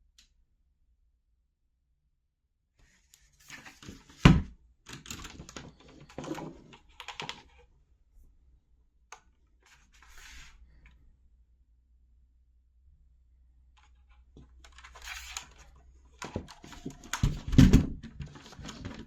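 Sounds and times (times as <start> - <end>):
loud keyboard thump: 16.7 - 18.1.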